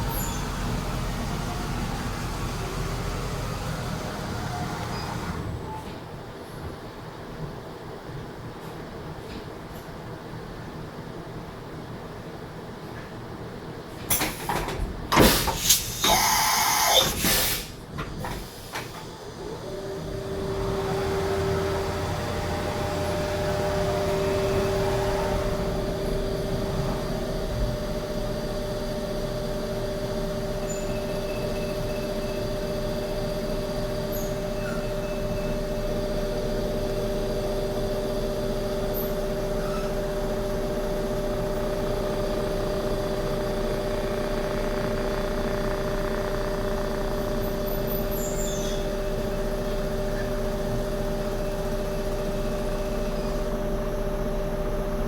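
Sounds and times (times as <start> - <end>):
loud clattering and hissing: 14.0 - 19.1
machine spindle whine: 19.4 - 55.0.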